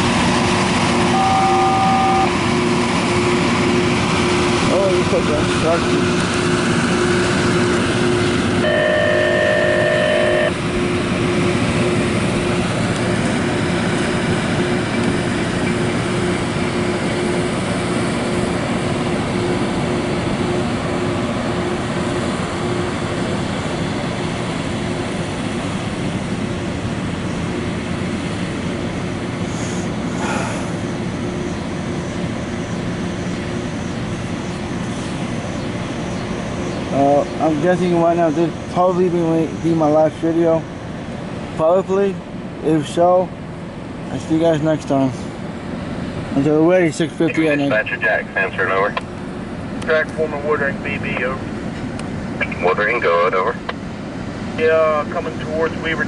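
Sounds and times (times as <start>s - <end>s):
vehicle running at speed: 0.0s - 41.6s
high tone with overtones: 1.0s - 4.6s, 7.0s - 10.6s.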